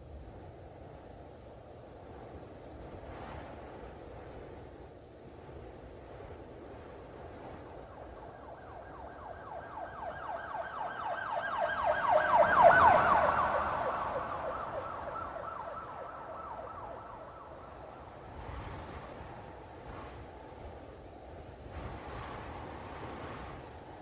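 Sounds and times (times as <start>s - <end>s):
police siren yelping: 8.6s - 17.9s.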